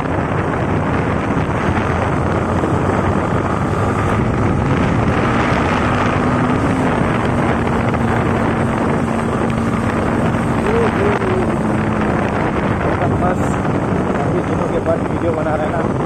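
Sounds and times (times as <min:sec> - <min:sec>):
motorcycle engine running: 0:00.0 - 0:16.0
wind noise on microphone: 0:00.0 - 0:16.0.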